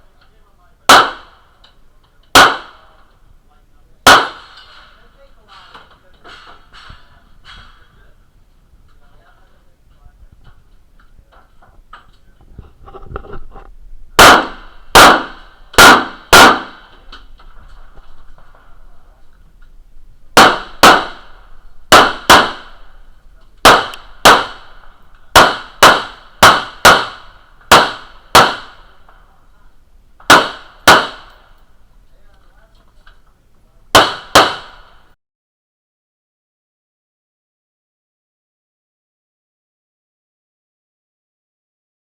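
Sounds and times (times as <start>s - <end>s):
gunshots with metallic ringing: 0.9s - 1.5s, 2.3s - 3.0s, 4.0s - 4.9s, 14.2s - 17.0s, 20.4s - 23.0s, 23.6s - 29.0s, 30.3s - 31.6s, 33.9s - 35.1s.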